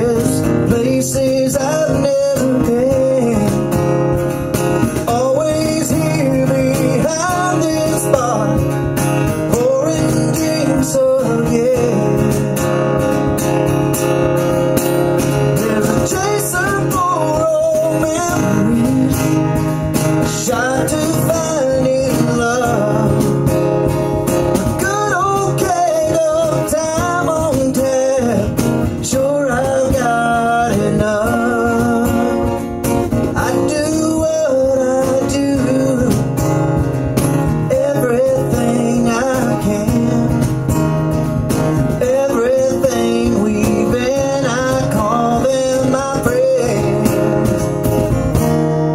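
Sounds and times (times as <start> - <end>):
acoustic guitars: 0.0 - 48.9
person singing: 24.6 - 32.5.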